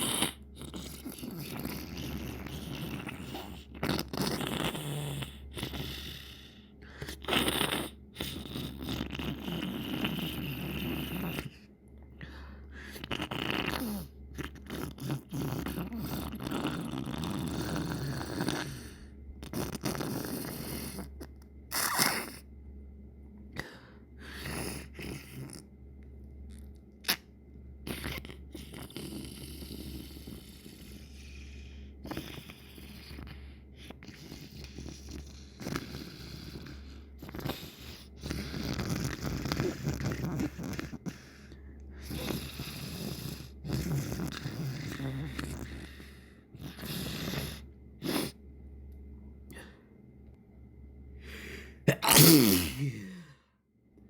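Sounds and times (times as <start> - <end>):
person sniffling wetly: 51.3 - 53.3.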